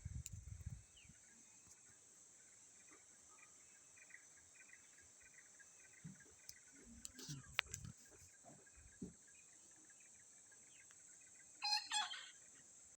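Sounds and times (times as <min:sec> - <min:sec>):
rooster crowing: 0:11.6 - 0:12.3.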